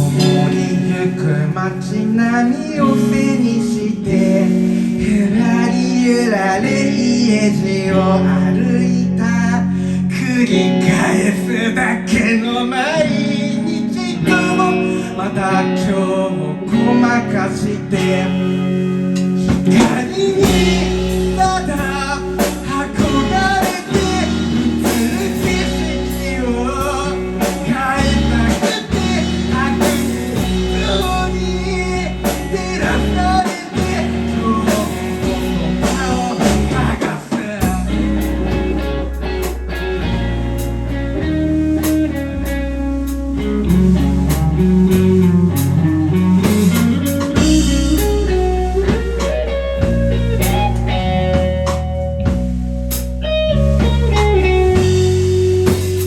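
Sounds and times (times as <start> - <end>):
drum kit: 0.0 - 5.7, 18.0 - 56.0
live band playing: 0.0 - 6.4, 17.9 - 56.0
bass: 0.0 - 56.0
guitar: 0.0 - 56.0.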